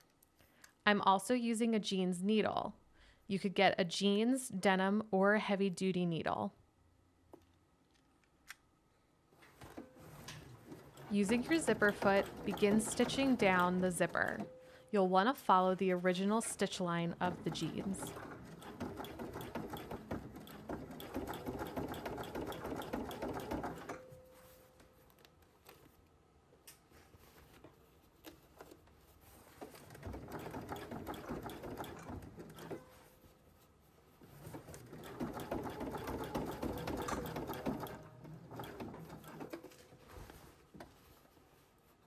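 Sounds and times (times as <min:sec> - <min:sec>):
sewing machine stitching: 0:10.0 - 0:14.6, 0:16.1 - 0:24.1, 0:29.3 - 0:33.2, 0:34.3 - 0:40.6.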